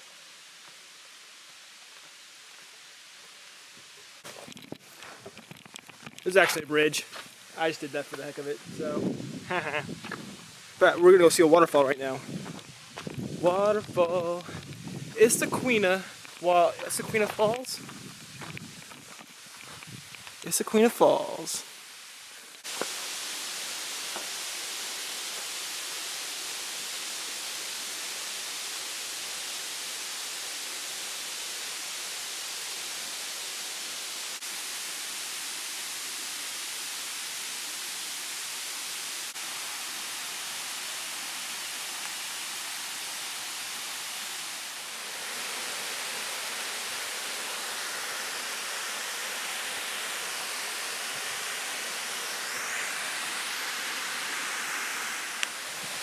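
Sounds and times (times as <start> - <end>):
waterfall rushing: 9.5 - 12.2, 13.4 - 17.8, 20.5 - 21.6, 22.6 - 56.0.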